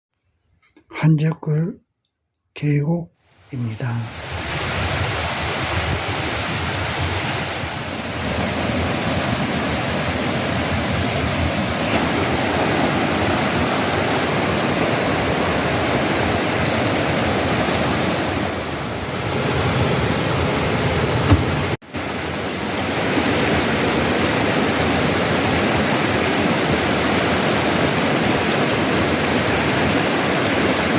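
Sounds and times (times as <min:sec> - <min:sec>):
stream rushing: 0:03.2 - 0:30.9.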